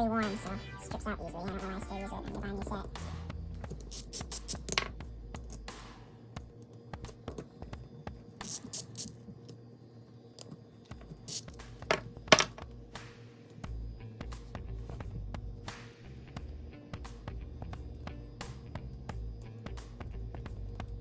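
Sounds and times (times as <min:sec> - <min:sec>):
steel bolts set on hard surface: 0:03.7 - 0:06.0, 0:08.4 - 0:09.5, 0:10.4 - 0:12.8.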